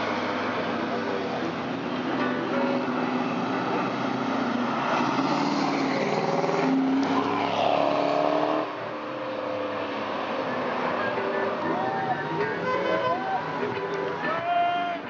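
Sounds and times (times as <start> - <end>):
car engine revving: 2.8 - 13.8.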